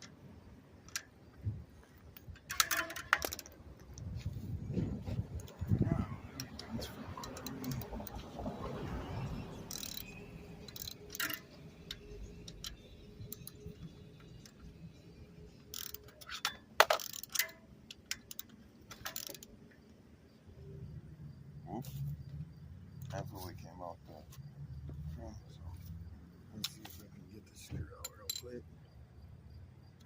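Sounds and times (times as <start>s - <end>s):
metallic clicks and knocks: 0.8s - 4.1s, 4.7s - 8.3s, 9.6s - 19.9s, 27.7s - 28.6s
ratchet ticking: 9.7s - 14.6s.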